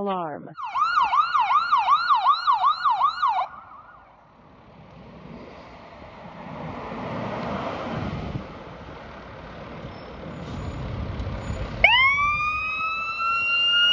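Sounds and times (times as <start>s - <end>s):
heavy vehicle engine rumble: 4.1s - 13.9s.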